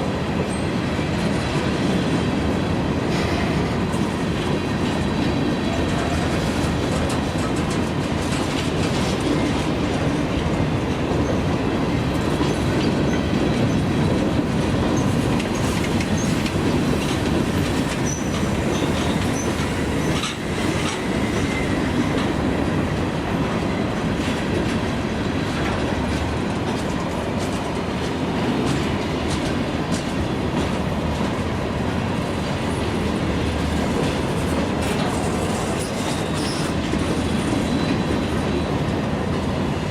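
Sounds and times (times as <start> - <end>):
train wheels clicking over rail joints: 0.2 - 38.7.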